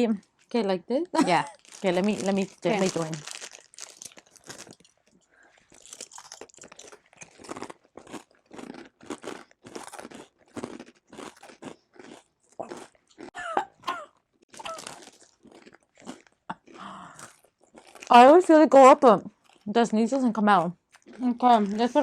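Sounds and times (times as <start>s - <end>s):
crunching rice crackers: 1.5s - 13.4s, 14.1s - 18.4s, 19.3s - 19.7s, 20.8s - 22.0s.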